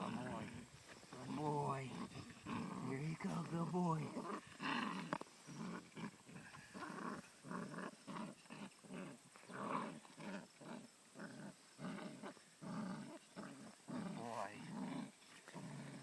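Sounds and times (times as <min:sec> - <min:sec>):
dog making throaty sounds: 0:00.0 - 0:07.0.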